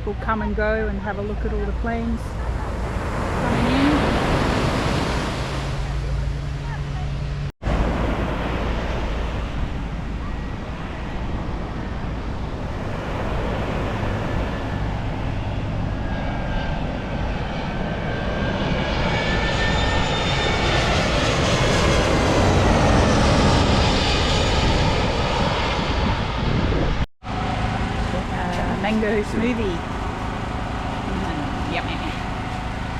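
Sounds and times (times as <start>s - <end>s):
jet airliner passing overhead: 0.0s - 32.9s
high whining engine tones: 10.2s - 32.9s.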